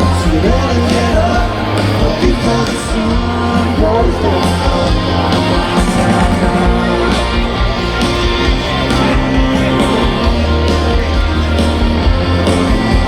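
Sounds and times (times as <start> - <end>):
person singing: 0.0 - 7.8
rock band playing live: 0.0 - 13.0.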